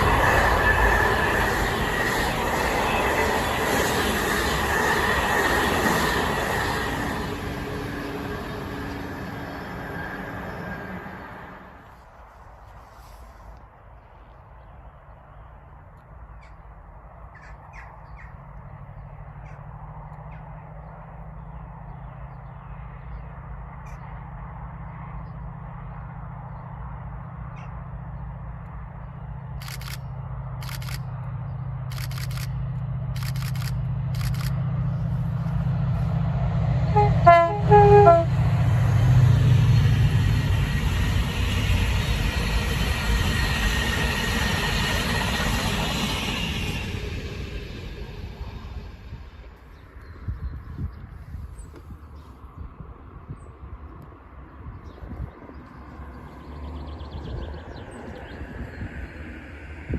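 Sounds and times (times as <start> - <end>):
diesel locomotive engine approaching: 0.0 - 59.9
rail and wheel noise: 0.0 - 59.9
sharp clicks: 29.6 - 31.3, 31.9 - 34.6
two-note train horn blast: 36.9 - 39.2.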